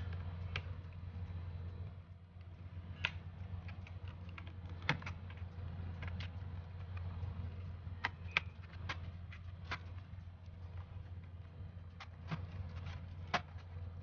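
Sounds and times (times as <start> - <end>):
plastic clips clicking and snapping: 2.4 - 10.0.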